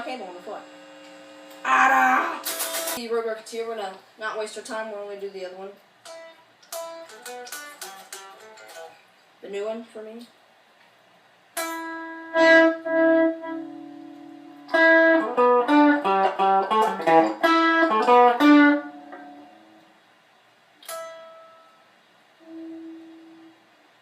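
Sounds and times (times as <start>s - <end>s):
electric guitar single notes: 11.6s - 19.9s, 22.4s - 23.6s.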